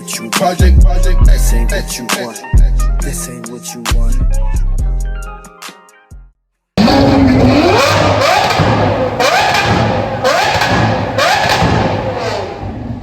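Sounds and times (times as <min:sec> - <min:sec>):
car engine revving hard: 0:06.8 - 0:13.0.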